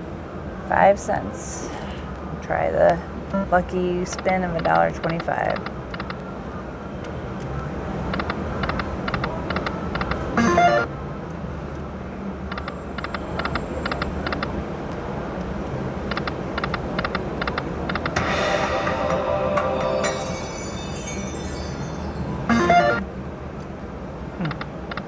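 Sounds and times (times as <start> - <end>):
casino background hum: 0.2 - 23.1
slot machine electronic ticks: 2.8 - 11.0, 12.4 - 23.0
slot machine chime: 10.4 - 10.9, 18.1 - 23.0.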